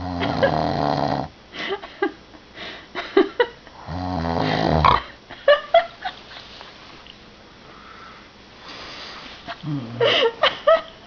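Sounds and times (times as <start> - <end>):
person snoring: 0.0 - 1.3, 3.8 - 5.1.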